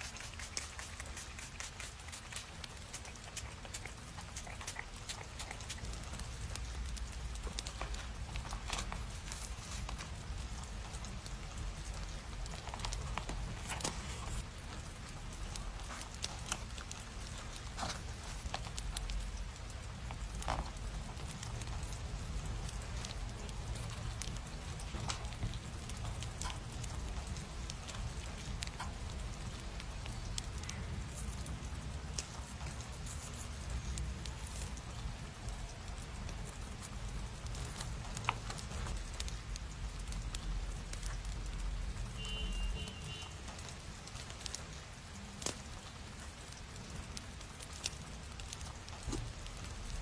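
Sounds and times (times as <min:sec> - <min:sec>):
hands tapping paper: 0:00.0 - 0:33.5
paper rustling: 0:07.4 - 0:19.2.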